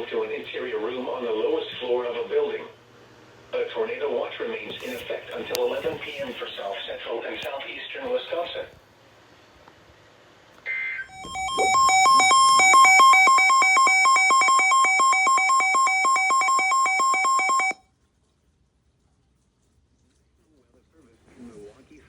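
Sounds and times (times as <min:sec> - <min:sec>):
two-pitch electronic alert beeps: 0:10.7 - 0:17.8.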